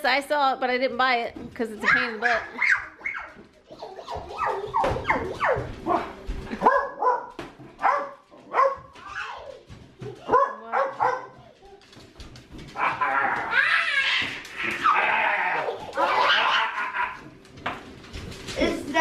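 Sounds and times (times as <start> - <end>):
dog barking and yipping: 1.8 - 3.4, 4.1 - 6.0, 6.6 - 9.5, 10.3 - 11.4, 15.9 - 17.2.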